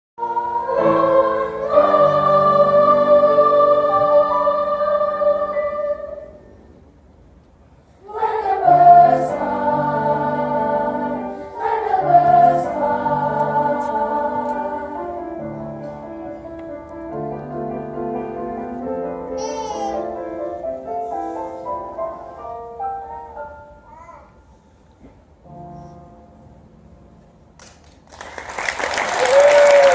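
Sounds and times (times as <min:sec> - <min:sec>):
choir singing sustained chords: 0:00.2 - 0:07.0, 0:08.0 - 0:19.3.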